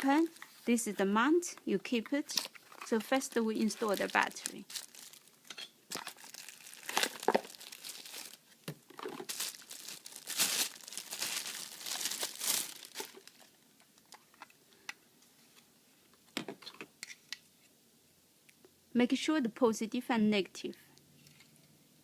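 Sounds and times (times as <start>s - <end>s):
plastic wrapping crinkling: 2.3s - 14.5s.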